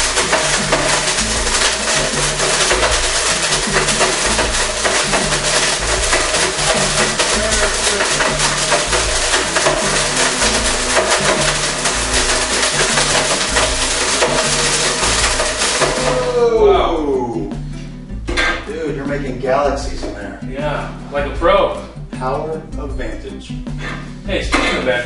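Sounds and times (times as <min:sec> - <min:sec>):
music with drum beat and bass: 0:00.0 - 0:25.0.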